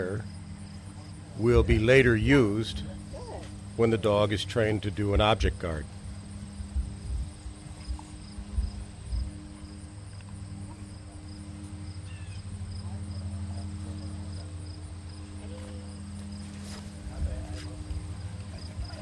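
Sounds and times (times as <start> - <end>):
insect chirping: 0.0 - 17.1
steady low hum: 0.0 - 19.0
dull low thumps: 5.0 - 9.3.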